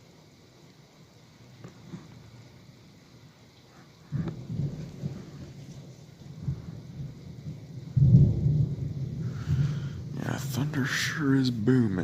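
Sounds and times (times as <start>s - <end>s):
pouring rain: 0.0s - 12.0s
thunder booming: 6.4s - 11.3s.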